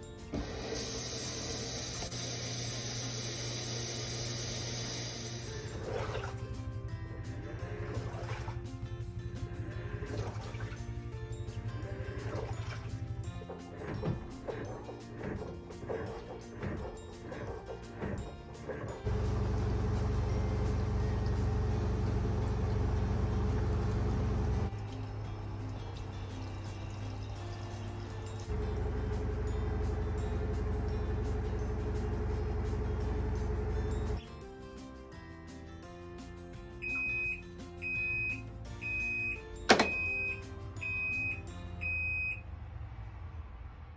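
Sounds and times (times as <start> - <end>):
background music: 0.0 - 2.0, 4.9 - 22.2, 24.6 - 43.0
washing machine rumbling: 0.3 - 34.2, 39.7 - 40.4
washing machine beeps: 36.8 - 42.4.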